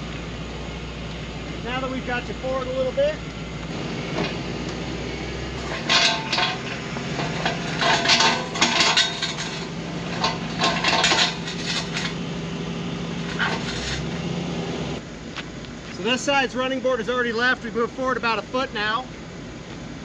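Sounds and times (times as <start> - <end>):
vehicle engine humming: 0.0 - 20.0
metallic clinks and rattles: 5.7 - 12.2.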